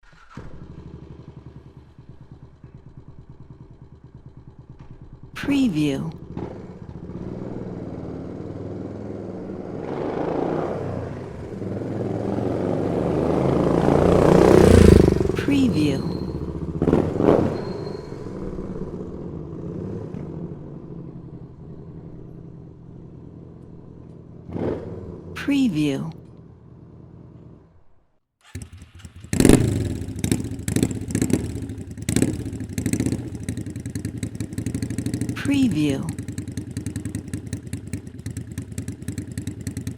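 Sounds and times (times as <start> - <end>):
motorcycle starter cranking: 0.0 - 3.3, 28.4 - 32.1
motorcycle engine running: 0.1 - 25.4, 28.4 - 39.9.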